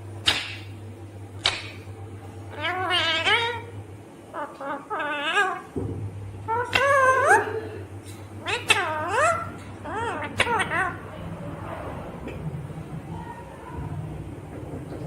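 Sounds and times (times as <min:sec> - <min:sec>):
parrot squawking: 0:02.5 - 0:03.7, 0:04.3 - 0:05.8, 0:06.4 - 0:07.8, 0:08.4 - 0:11.4.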